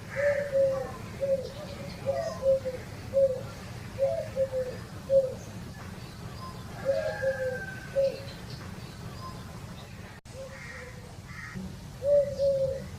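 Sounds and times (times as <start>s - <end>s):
dove cooing: 0.0s - 5.5s, 6.7s - 8.4s, 10.3s - 12.9s.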